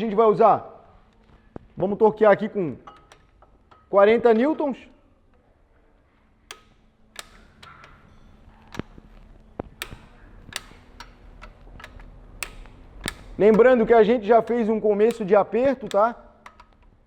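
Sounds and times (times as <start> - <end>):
torque wrench clicking: 2.8 - 4.3, 6.4 - 17.0.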